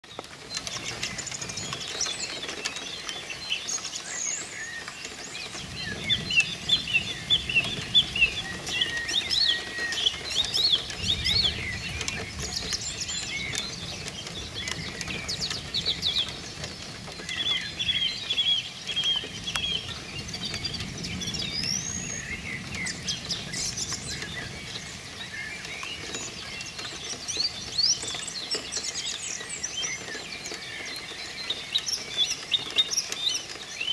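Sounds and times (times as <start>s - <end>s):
songbirds singing: 0.0s - 33.9s
distant thunder rumbling: 5.4s - 18.3s, 19.2s - 27.9s.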